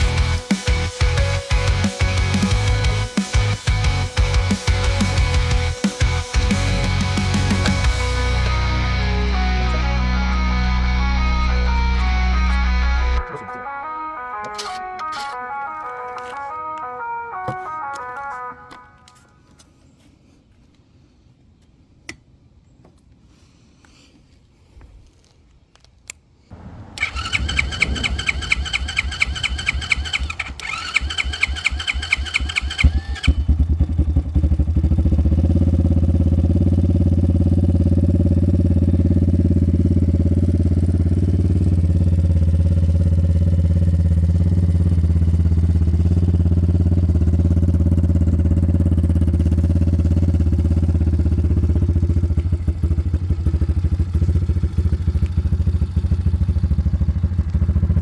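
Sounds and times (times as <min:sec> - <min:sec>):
motorcycle engine idling: 0:00.0 - 0:13.2, 0:26.5 - 0:58.0
electric starter cranking engine: 0:26.9 - 0:33.6.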